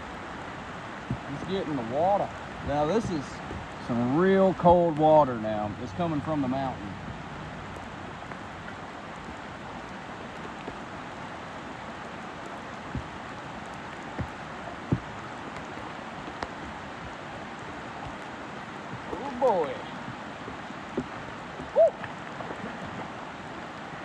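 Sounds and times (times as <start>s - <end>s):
steady rain hiss: 0.0s - 24.0s.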